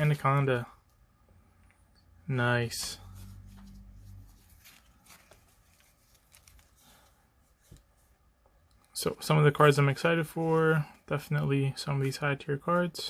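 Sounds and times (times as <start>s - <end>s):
low steady hum: 0.0s - 13.0s
trading cards and wrappers rustling: 2.7s - 8.1s.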